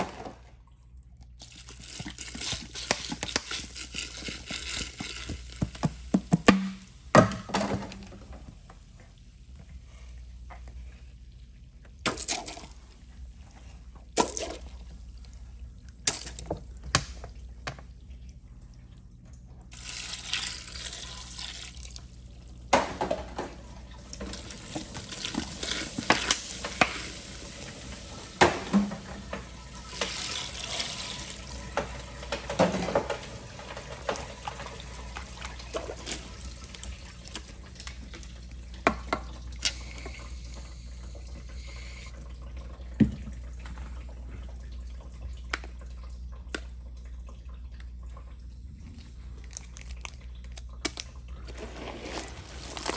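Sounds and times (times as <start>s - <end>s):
clicks and splashes: 0.0s - 8.2s, 49.1s - 52.9s
toilet flushing: 0.0s - 18.4s, 19.6s - 49.4s, 51.2s - 52.9s.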